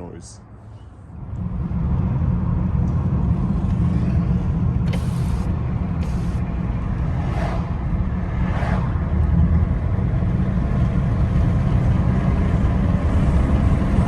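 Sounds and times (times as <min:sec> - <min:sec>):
car engine and road noise: 0:00.0 - 0:14.0
brief hisses: 0:04.9 - 0:06.4.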